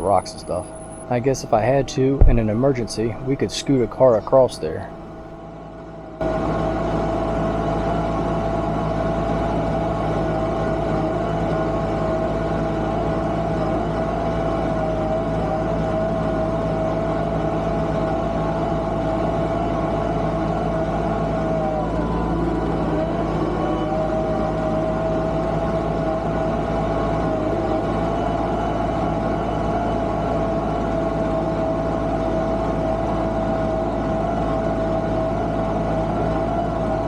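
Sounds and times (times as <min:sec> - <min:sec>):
steady whine: 0:00.4 - 0:05.4
tractor engine under load: 0:01.1 - 0:05.3.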